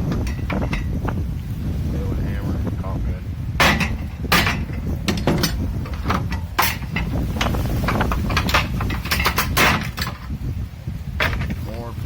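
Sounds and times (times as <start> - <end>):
hammer striking plastic housing: 3.6 - 10.2.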